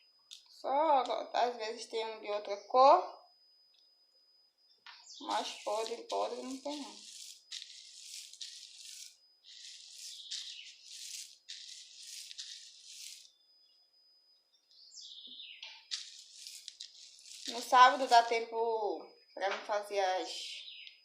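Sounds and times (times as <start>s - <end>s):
dry beans rattling: 5.2s - 13.3s, 15.8s - 18.4s.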